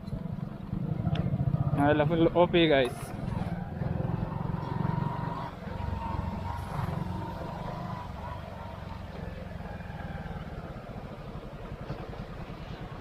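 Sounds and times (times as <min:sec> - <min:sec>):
motorcycle engine running: 0:00.0 - 0:13.0.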